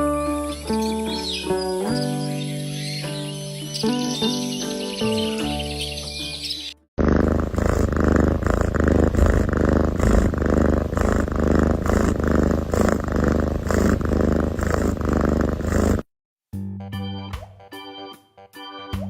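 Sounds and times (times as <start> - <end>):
animal making low rhythmic sound: 7.0 - 16.0.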